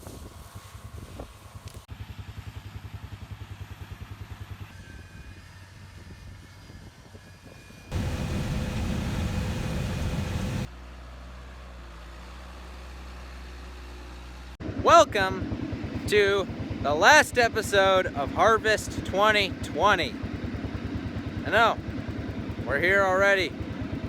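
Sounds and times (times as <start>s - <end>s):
farm machinery engine running: 7.9s - 10.7s.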